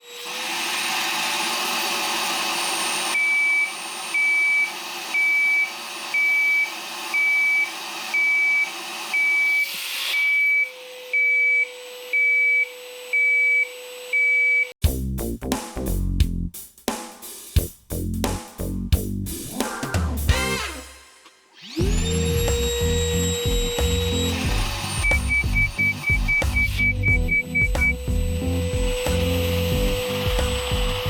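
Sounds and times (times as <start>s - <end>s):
vacuum cleaner running: 0.0s - 14.6s, 21.6s - 31.0s.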